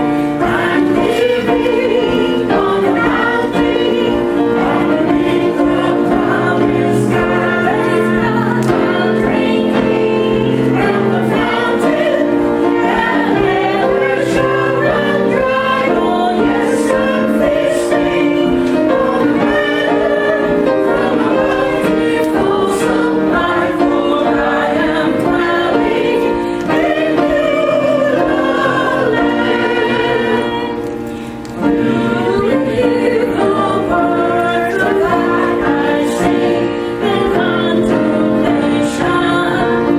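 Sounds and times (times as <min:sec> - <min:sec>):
church choir singing a hymn: 0:00.0 - 0:39.9.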